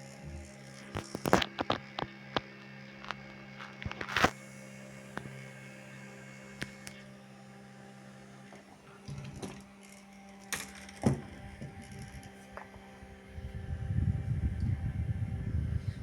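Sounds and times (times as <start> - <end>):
fan motor humming: 0.0 - 16.0.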